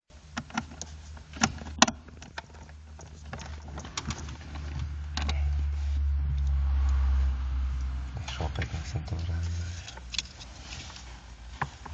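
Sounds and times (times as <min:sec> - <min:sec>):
parts clicking and knocking: 0:00.3 - 0:07.0.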